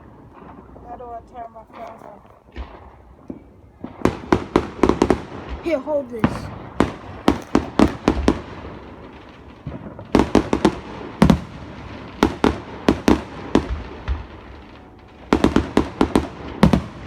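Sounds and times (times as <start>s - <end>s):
fireworks banging: 0.0s - 17.0s.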